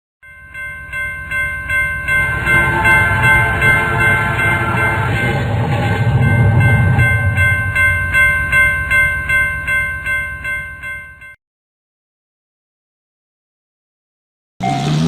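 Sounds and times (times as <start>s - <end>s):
railroad crossing warning bell: 0.2s - 11.4s
train rumbling past: 1.2s - 10.1s.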